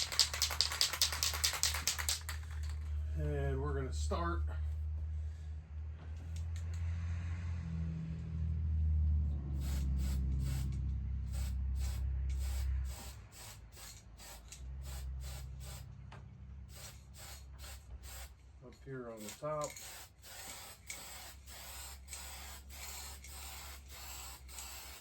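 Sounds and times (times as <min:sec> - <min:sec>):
lacquer spray hissing spurts: 0:09.5 - 0:15.9, 0:16.7 - 0:18.4, 0:19.1 - 0:25.0.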